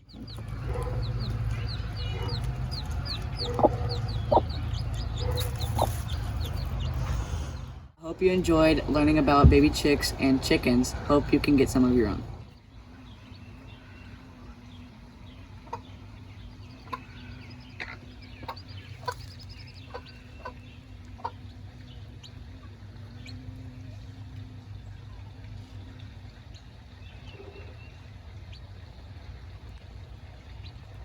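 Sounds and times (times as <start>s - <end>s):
chickens clucking and peeping: 0.0s - 7.5s, 8.8s - 25.1s
steady low hum: 0.0s - 31.0s.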